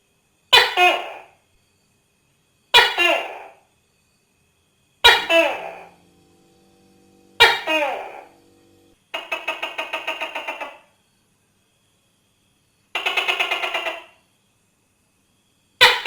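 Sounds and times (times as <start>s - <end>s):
gecko rattling trill: 5.0s - 6.2s.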